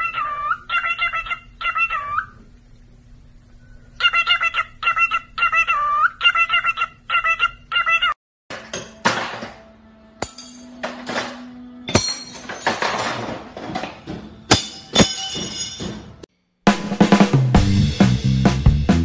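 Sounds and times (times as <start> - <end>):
drum and cymbal hits: 16.7 - 19.0
music with drum beat and bass: 16.7 - 19.0.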